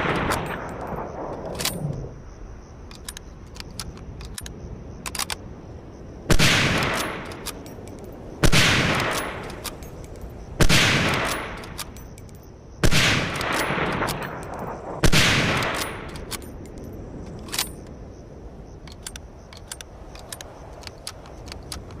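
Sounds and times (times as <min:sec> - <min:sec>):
rifle bolt clicks: 0:00.1 - 0:02.0, 0:02.9 - 0:05.4, 0:06.4 - 0:12.4, 0:13.2 - 0:17.9, 0:18.8 - 0:22.0
rifle shots: 0:06.3 - 0:07.6, 0:08.4 - 0:09.8, 0:10.6 - 0:12.0, 0:12.8 - 0:16.5.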